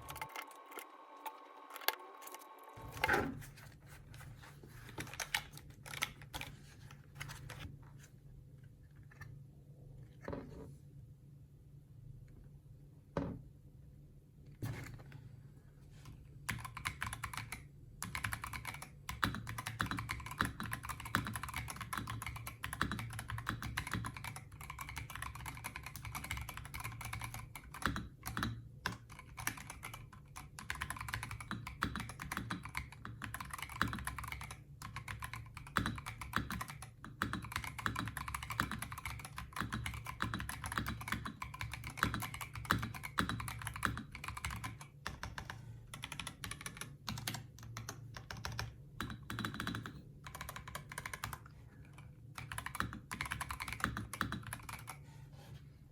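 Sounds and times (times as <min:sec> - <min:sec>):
mechanical keyboard typing: 0:00.0 - 0:03.3, 0:05.0 - 0:06.6, 0:16.5 - 0:55.0.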